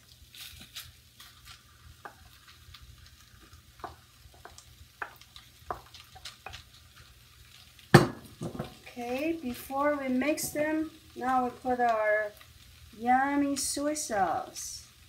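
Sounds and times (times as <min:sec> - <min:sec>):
food sizzling in a pan: 0:00.0 - 0:15.0
spatula scraping and tapping pan: 0:03.4 - 0:07.1.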